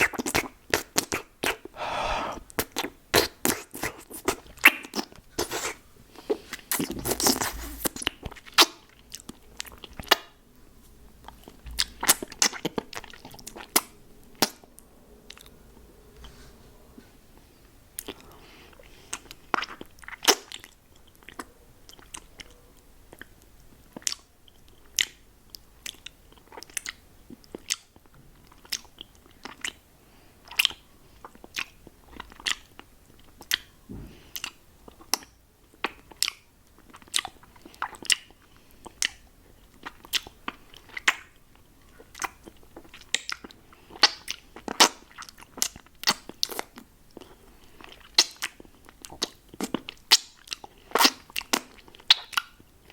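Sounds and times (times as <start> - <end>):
wet mouth clicks and smacks: 34.3 - 38.3, 47.8 - 52.6.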